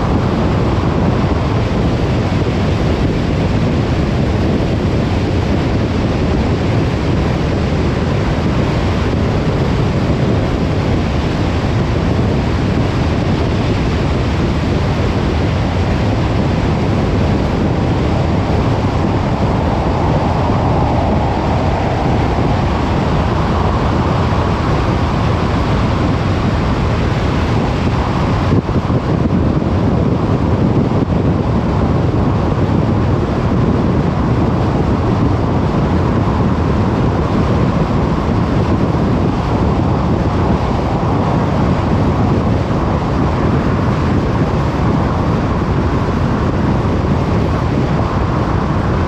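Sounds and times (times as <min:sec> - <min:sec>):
car driving road noise: 0:00.0 - 0:32.8.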